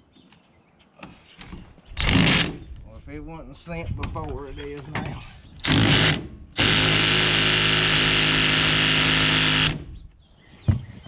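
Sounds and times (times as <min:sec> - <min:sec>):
power tool running: 0:02.0 - 0:02.6, 0:05.6 - 0:10.0.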